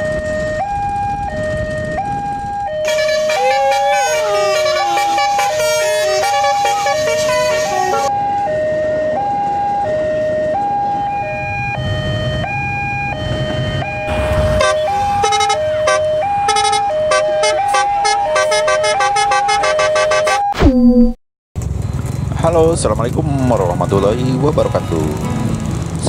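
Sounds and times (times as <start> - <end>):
level crossing two-tone alarm: 11.0 - 20.6.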